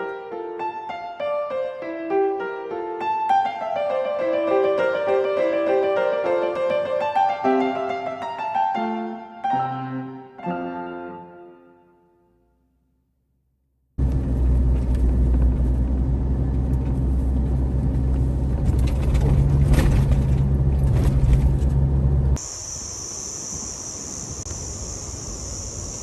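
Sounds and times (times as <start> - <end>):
car engine low rumble: 14.0 - 22.4
high-pitched insect drone: 22.4 - 26.0.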